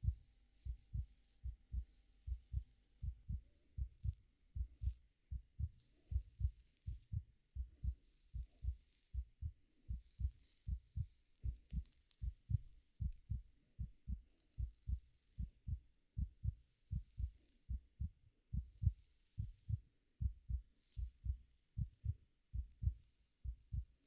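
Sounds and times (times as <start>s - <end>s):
heartbeat: 0.0s - 24.0s
fingers rustling through hair: 7.8s - 13.4s, 20.7s - 22.2s.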